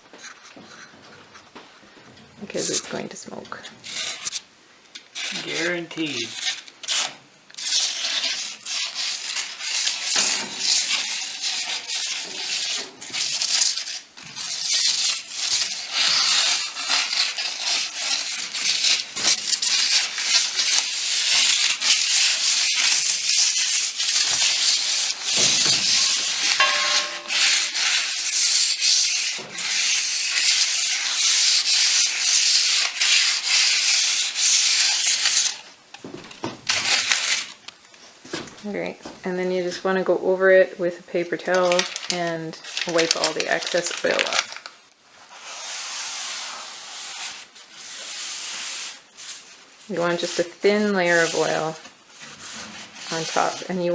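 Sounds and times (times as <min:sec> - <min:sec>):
scratchy rubbing on stove top: 0:02.4 - 0:03.1, 0:03.8 - 0:04.4, 0:05.2 - 0:35.7, 0:45.2 - 0:53.9.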